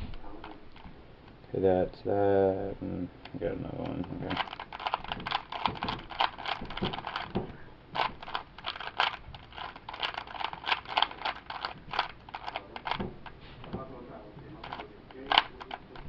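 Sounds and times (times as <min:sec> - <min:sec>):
puzzle cube clacking: 0:03.2 - 0:13.9, 0:14.5 - 0:16.0.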